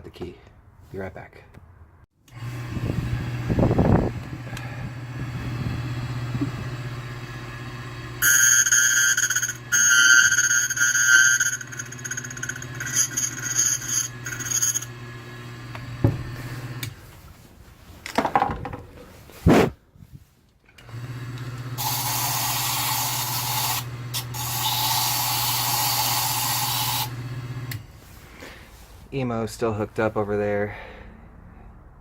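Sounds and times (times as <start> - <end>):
machine motor hum: 2.3 - 9.9
cutter scraping screech: 8.2 - 15.0, 21.8 - 27.1.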